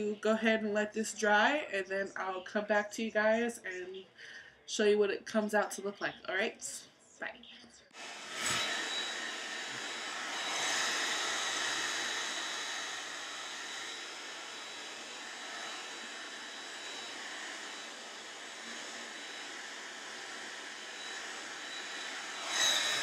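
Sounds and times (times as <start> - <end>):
hair dryer blowing: 8.0 - 23.0
thin high whine: 8.0 - 23.0.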